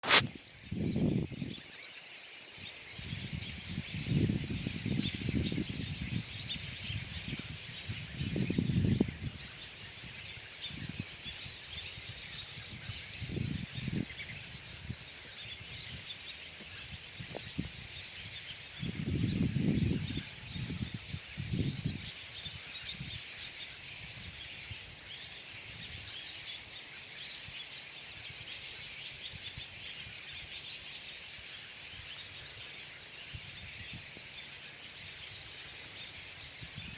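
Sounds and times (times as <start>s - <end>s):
flock of birds chirping: 0.0s - 36.9s.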